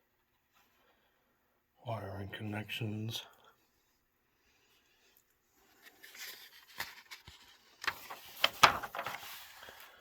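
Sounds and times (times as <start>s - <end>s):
paper pages rustling: 5.6s - 10.0s.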